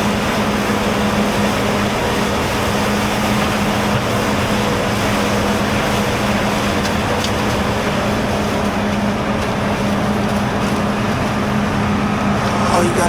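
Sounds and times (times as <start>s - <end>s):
diesel harvester running: 0.0s - 13.0s.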